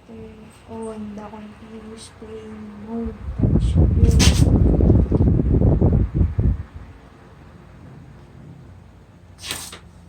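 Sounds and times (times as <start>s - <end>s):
low rumbling on microphone: 2.6s - 7.1s.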